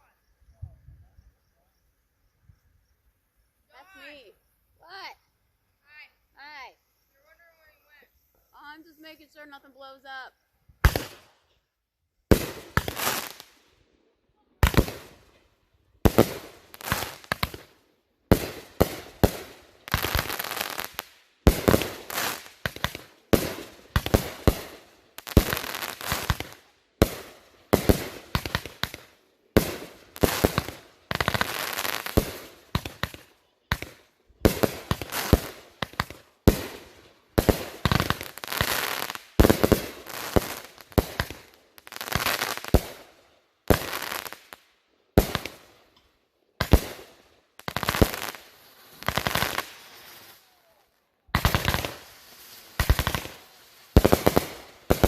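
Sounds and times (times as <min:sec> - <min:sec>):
fireworks bangs and crackle: 0:10.8 - 0:11.4, 0:12.3 - 0:13.6, 0:14.6 - 0:15.4, 0:16.0 - 0:46.0, 0:46.6 - 0:55.0.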